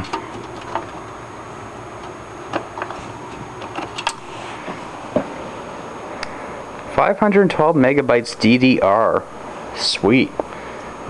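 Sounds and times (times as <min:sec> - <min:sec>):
hands clicking and tapping parts: 0:00.0 - 0:01.2, 0:02.0 - 0:04.2
steady background hiss: 0:00.0 - 0:11.0.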